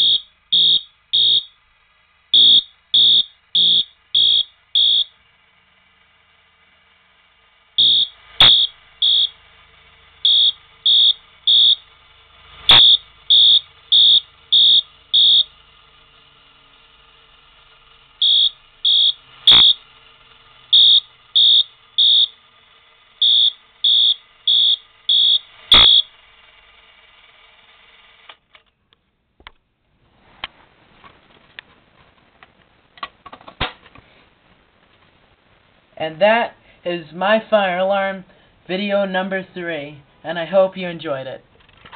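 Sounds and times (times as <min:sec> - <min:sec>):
fire alarm horn blasts: 0:00.0 - 0:01.6, 0:02.3 - 0:05.2, 0:07.8 - 0:09.4, 0:10.2 - 0:11.8, 0:12.7 - 0:15.5, 0:18.2 - 0:19.8, 0:20.7 - 0:22.3, 0:23.2 - 0:26.2.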